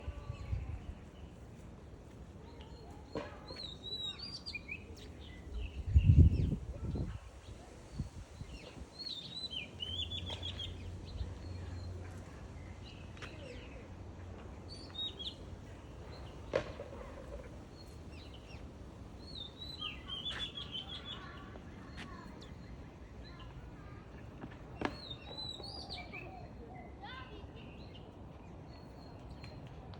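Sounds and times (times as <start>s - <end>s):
small birds chirping: 0.1s - 14.0s, 14.6s - 29.7s.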